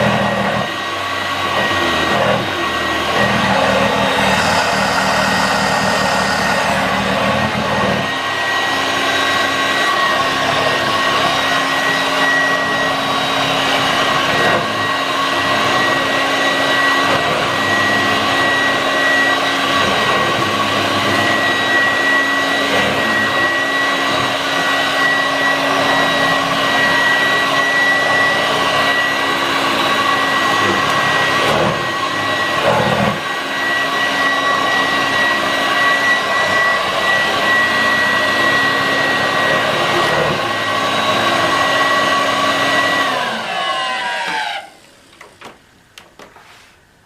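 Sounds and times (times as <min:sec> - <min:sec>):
vacuum cleaner whine: 0:00.0 - 0:47.0.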